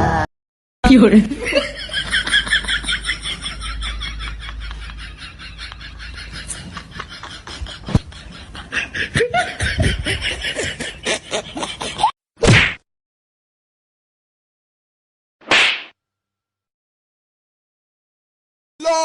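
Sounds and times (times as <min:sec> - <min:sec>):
person snickering and laughing: 0:01.4 - 0:12.2.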